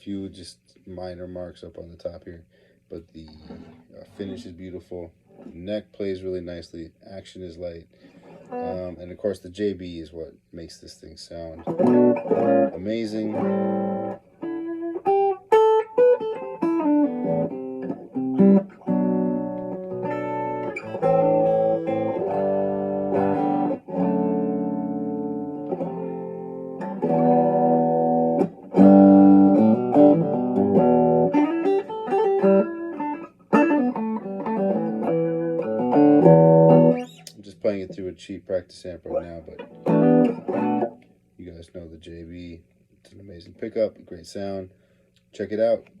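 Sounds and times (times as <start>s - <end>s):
electric guitar riffs and chords: 8.0s - 9.0s, 11.5s - 38.0s, 39.1s - 41.0s.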